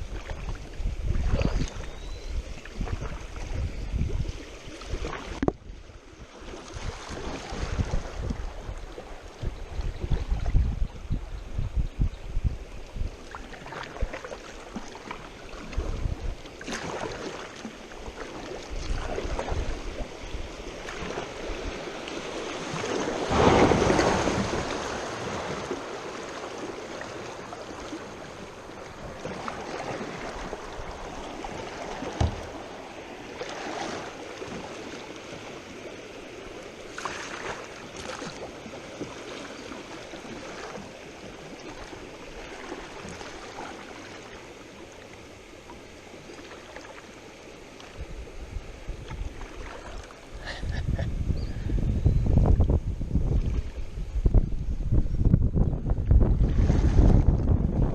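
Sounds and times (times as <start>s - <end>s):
river water rushing and splashing: 0.0s - 11.7s, 12.8s - 51.0s
wind buffeting microphone: 0.0s - 13.3s, 15.6s - 16.4s, 50.4s - 57.9s
water surge: 13.3s - 35.4s.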